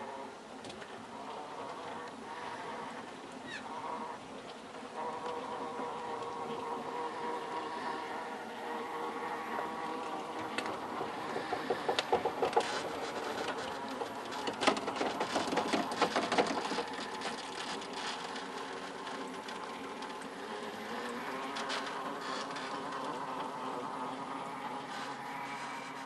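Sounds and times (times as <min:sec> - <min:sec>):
electric motor whining: 0:01.1 - 0:26.0
clicks and knocks on rock: 0:11.4 - 0:17.4.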